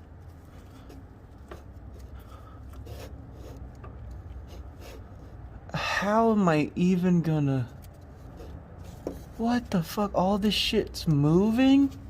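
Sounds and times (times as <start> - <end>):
hands rubbing metal parts: 0.0 - 5.5, 7.6 - 10.0
low steady hum: 0.0 - 12.0.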